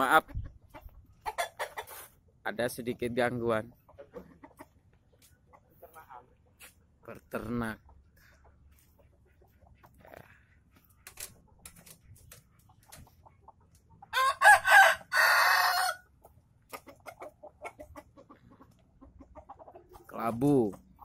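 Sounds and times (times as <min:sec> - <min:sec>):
rooster crowing: 0:14.1 - 0:16.1.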